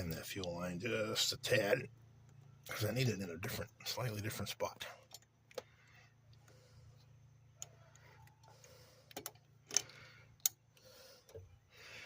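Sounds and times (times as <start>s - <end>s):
clicks and taps on metal fuel line: 5.0s - 11.6s.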